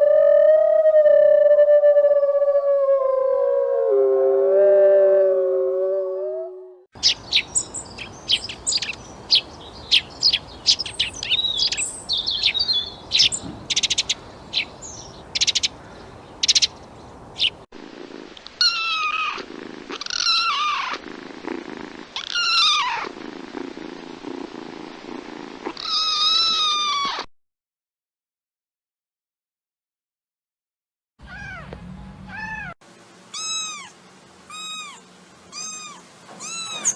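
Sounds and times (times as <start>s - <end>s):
high chirps and clicks: 7.0s - 15.8s
kitten mewing: 18.6s - 23.7s, 25.6s - 27.3s, 31.3s - 36.9s.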